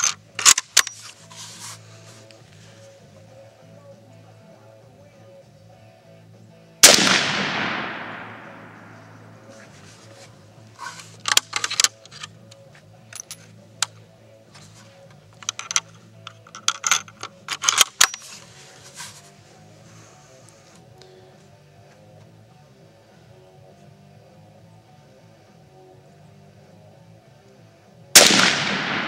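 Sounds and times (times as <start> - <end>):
rifle bolt clicks and clacks: 0.0 - 1.2, 11.1 - 14.0, 15.4 - 18.4
rifle shot: 6.8 - 9.8, 28.2 - 29.0.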